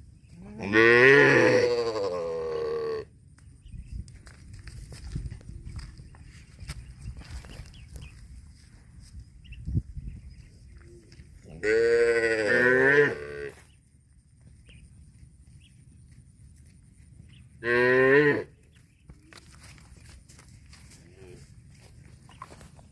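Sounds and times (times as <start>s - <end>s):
cow mooing: 0.5s - 3.1s, 11.6s - 13.6s, 17.6s - 18.5s.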